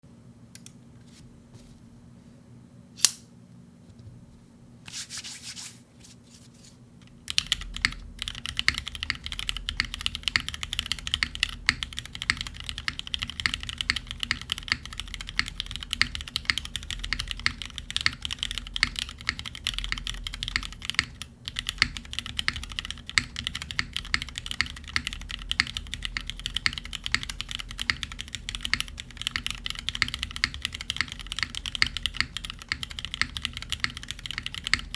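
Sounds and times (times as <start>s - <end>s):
sharp loud click: 3.0s - 3.3s
short rustle: 4.0s - 6.8s
fast typing on mechanical keyboard: 7.0s - 34.9s.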